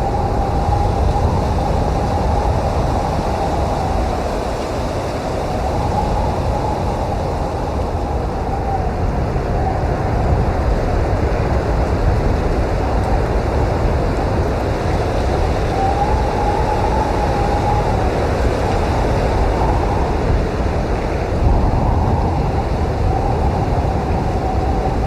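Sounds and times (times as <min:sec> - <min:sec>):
faint whistling howl: 0:00.0 - 0:10.7, 0:15.1 - 0:20.6, 0:21.4 - 0:25.0
blizzard wind blowing hard: 0:00.0 - 0:25.0.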